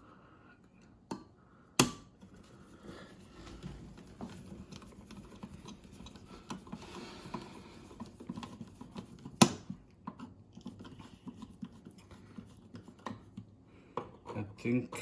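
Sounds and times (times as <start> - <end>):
tool tapping and scraping: 3.3 - 15.0.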